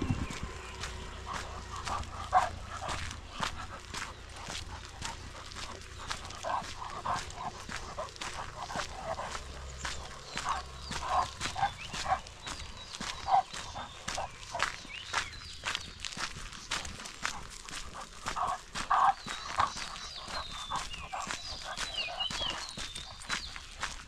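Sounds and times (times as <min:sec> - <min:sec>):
crackling footsteps: 0:00.0 - 0:24.0
dog barking and yipping: 0:00.4 - 0:14.9, 0:18.3 - 0:22.6.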